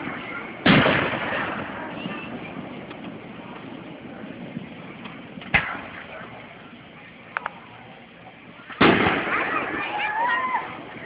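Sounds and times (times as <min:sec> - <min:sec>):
firework pops: 0:00.6 - 0:02.2, 0:05.0 - 0:06.2, 0:08.7 - 0:09.9
firework bang: 0:00.6 - 0:02.5, 0:05.4 - 0:06.2, 0:08.7 - 0:10.2.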